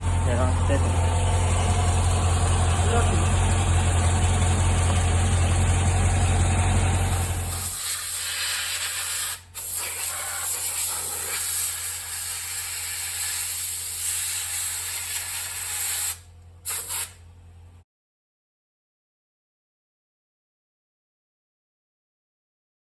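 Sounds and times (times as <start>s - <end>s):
compressed air hissing: 7.2s - 17.2s.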